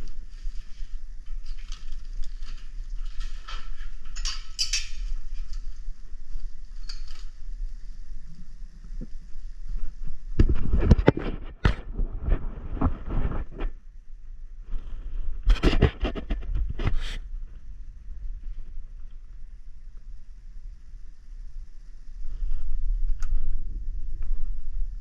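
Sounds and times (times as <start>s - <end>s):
scraping and rattling: 0.0s - 13.8s.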